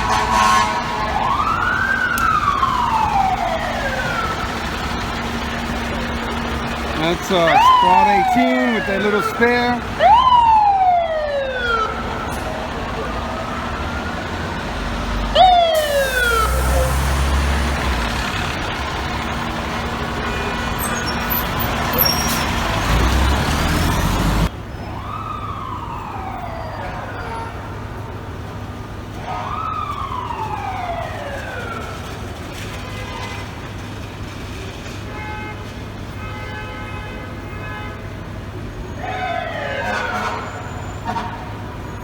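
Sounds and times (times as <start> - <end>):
faint steady siren tones: 0.0 - 17.9, 24.7 - 28.3, 29.2 - 32.3, 38.8 - 42.0
fire truck and street traffic: 0.0 - 42.0
siren rising and winding down: 1.0 - 5.0, 5.6 - 12.3, 13.3 - 17.9.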